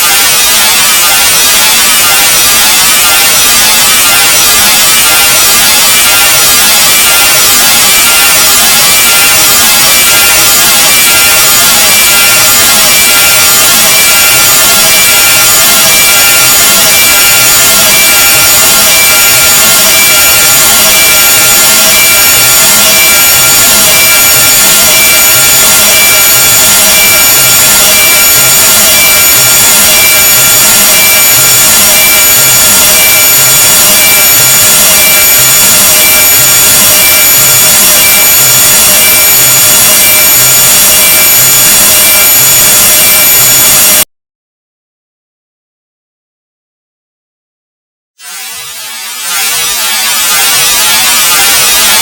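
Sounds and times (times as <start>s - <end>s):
harsh grating hiss: 0.0s - 9.9s, 48.2s - 52.0s
steady high tones: 0.0s - 44.1s, 48.2s - 52.0s.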